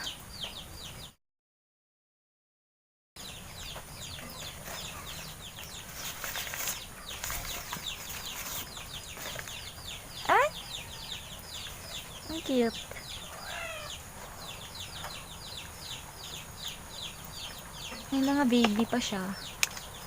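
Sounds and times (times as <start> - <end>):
birds chirping: 0.0 - 1.2, 3.2 - 20.0
faint rustling: 4.2 - 9.9.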